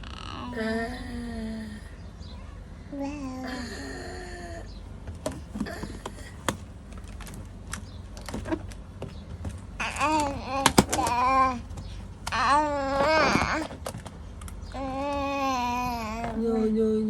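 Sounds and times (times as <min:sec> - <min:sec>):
small clicks and knocks: 0:05.0 - 0:15.2
baby crying: 0:12.3 - 0:13.7, 0:14.8 - 0:16.6.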